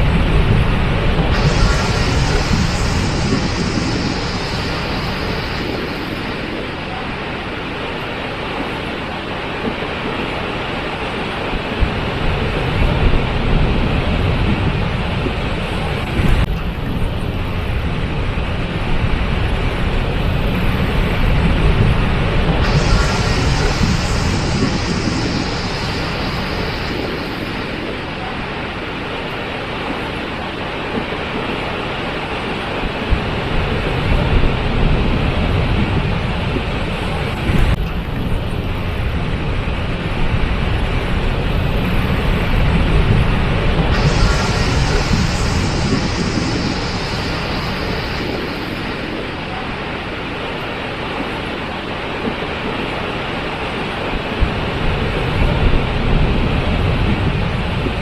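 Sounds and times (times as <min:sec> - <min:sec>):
waterfall rushing: 0:01.3 - 0:07.7, 0:43.9 - 0:50.8.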